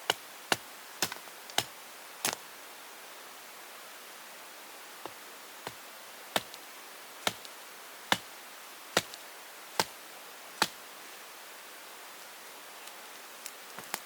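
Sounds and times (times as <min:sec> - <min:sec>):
steady hiss: 0:00.0 - 0:14.0
chopping strikes: 0:06.4 - 0:06.6, 0:07.3 - 0:07.5.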